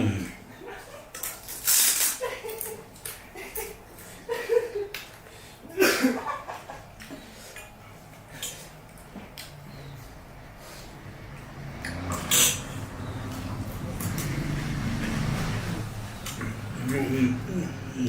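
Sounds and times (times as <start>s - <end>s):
person murmuring: 16.5s - 18.0s.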